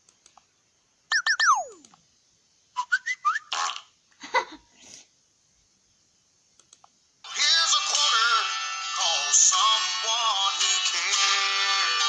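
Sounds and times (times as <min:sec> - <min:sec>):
falling whistle glides: 0:01.1 - 0:01.8
short rising chirpy notes: 0:01.1 - 0:01.9.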